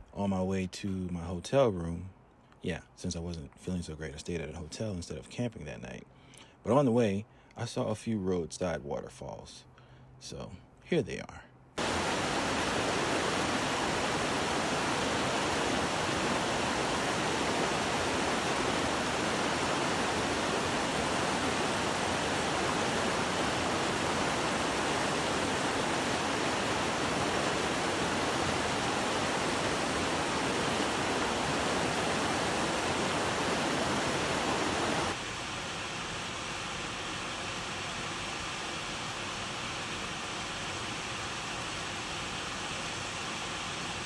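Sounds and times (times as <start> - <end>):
waterfall rushing: 11.8 - 44.0.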